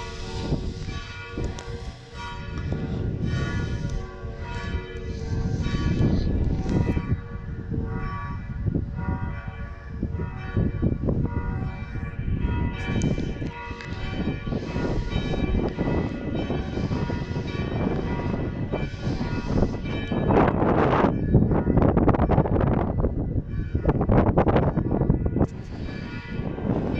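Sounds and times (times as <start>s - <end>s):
loud low rumble: 0.0s - 9.3s
church bells ringing: 0.0s - 26.9s.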